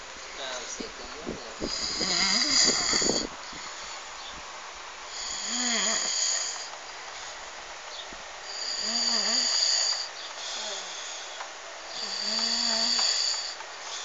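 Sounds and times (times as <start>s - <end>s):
man snoring heavily: 1.6s - 4.0s, 5.1s - 7.4s, 8.4s - 14.0s.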